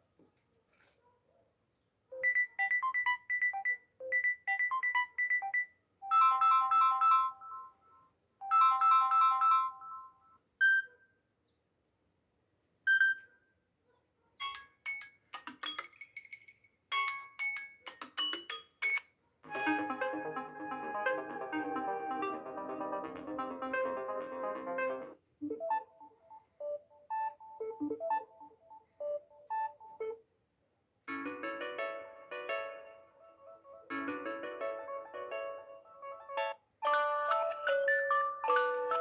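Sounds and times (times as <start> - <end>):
phone ringtones playing: 14.4 - 30.2, 36.8 - 39.0.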